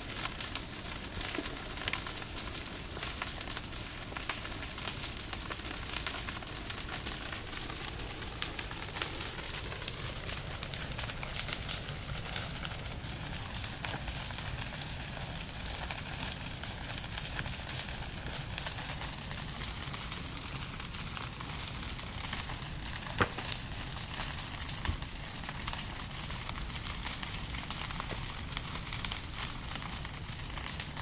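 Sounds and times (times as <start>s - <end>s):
fire crackling: 0.0s - 31.0s
loud fire pop: 23.0s - 23.8s.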